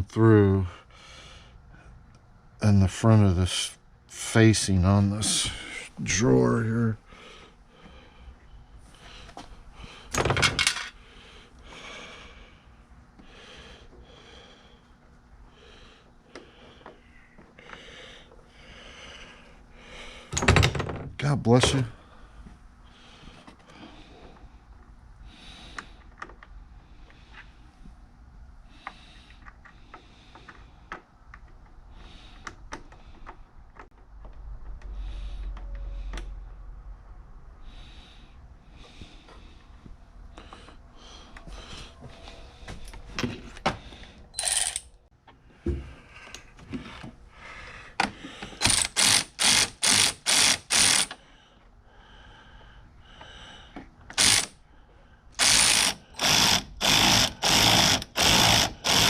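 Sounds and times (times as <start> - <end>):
ratchet wrench clicking: 44.4 - 45.0, 48.6 - 51.2, 54.1 - 54.6, 55.4 - 59.0.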